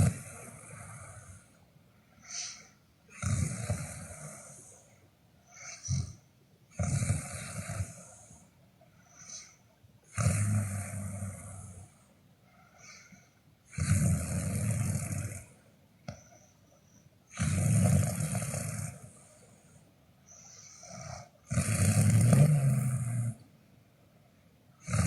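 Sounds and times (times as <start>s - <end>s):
soft breathing: 0.0s - 2.9s, 7.8s - 9.8s, 10.6s - 13.5s, 18.9s - 23.6s
person snoring: 17.4s - 19.1s, 20.6s - 23.4s.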